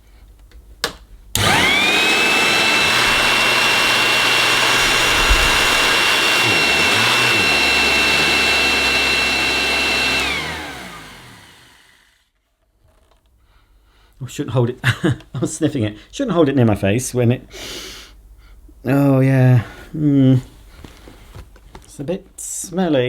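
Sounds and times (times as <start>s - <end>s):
vacuum cleaner motor whine: 1.4s - 12.2s
vacuum cleaner switch click: 10.0s - 11.5s.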